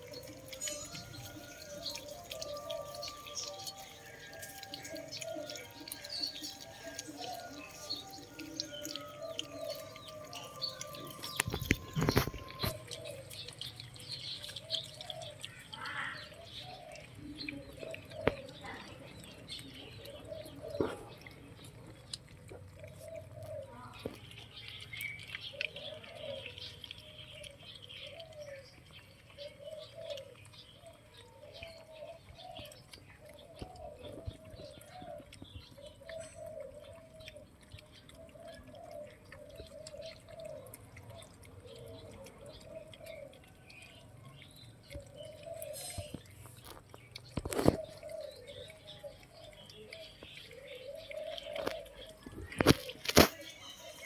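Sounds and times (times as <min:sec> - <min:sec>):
puppies lapping and chewing: 0:00.0 - 0:54.0
puppies squeaking and whimpering: 0:00.0 - 0:54.0.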